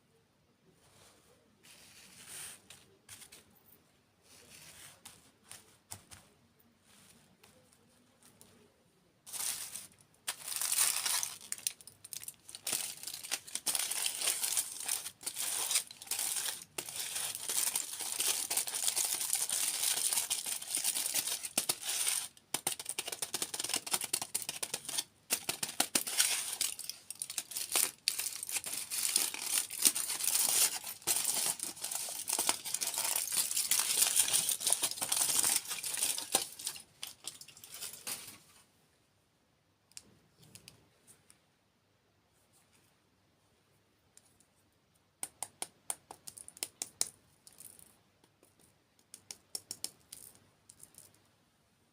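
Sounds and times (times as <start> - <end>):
packaging crinkling and tearing: 9.3 - 38.4.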